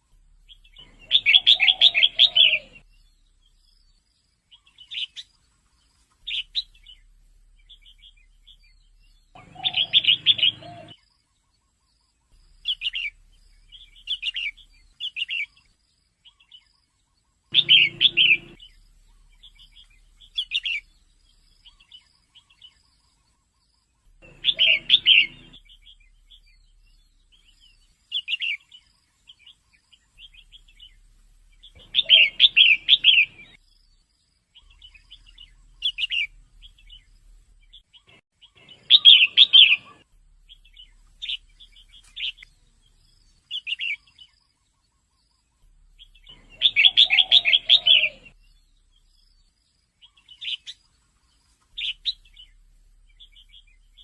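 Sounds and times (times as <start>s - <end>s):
bird chattering chirps: 0.5s - 2.9s, 6.2s - 11.0s, 17.4s - 20.9s, 24.0s - 31.0s, 31.6s - 33.6s, 34.6s - 42.6s, 43.2s - 49.0s.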